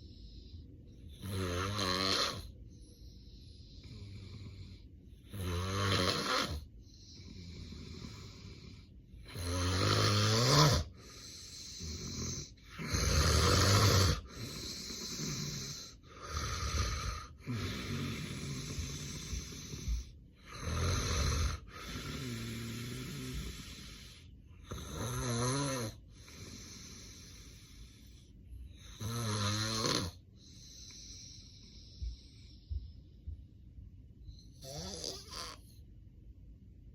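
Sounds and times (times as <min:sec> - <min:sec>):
noisy breathing: 0:00.0 - 0:35.9
man snoring heavily: 0:01.2 - 0:02.5, 0:03.9 - 0:27.4, 0:28.9 - 0:30.2, 0:34.6 - 0:35.6.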